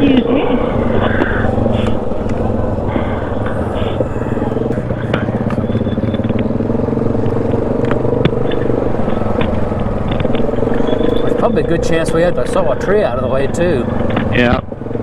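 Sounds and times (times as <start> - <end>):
atv engine running: 0.0 - 15.0
sharp clicks and knocks: 7.2 - 11.4, 14.0 - 14.6.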